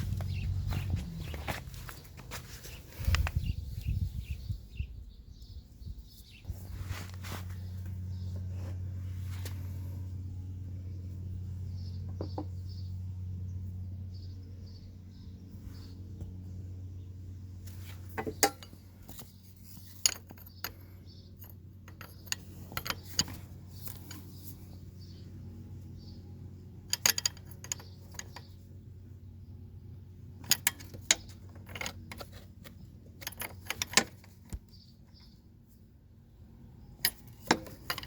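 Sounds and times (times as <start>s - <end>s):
steady low hum: 0.0s - 38.0s
metal tools clinking on metal: 18.2s - 24.4s, 26.9s - 28.6s, 30.4s - 34.6s, 37.0s - 38.0s.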